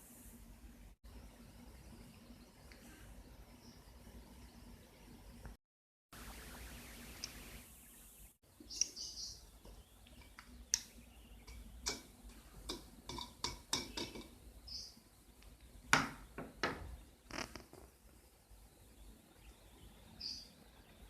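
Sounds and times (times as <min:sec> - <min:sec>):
lovebirds chirping: 0:06.2 - 0:17.4, 0:18.2 - 0:21.0.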